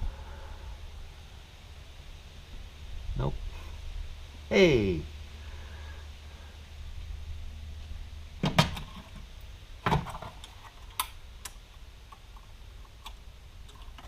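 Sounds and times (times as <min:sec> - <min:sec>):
low steady hum: 0:00.0 - 0:14.0
sharp clicks and knocks: 0:08.4 - 0:14.0.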